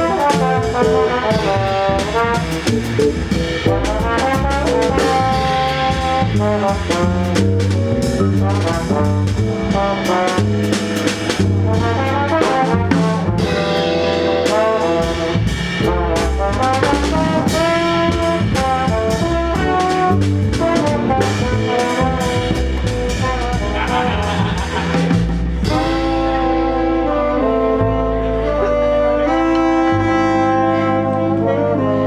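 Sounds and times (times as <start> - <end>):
steady drum strokes: 0.0 - 27.1
brass melody notes: 0.0 - 32.0
walking bass: 0.0 - 32.0.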